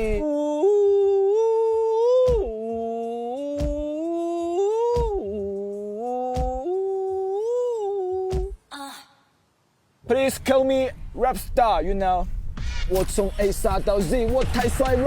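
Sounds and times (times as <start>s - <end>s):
kick drum thumping: 2.3s - 2.5s, 3.6s - 3.9s, 5.0s - 5.2s, 6.4s - 6.6s, 8.3s - 8.6s.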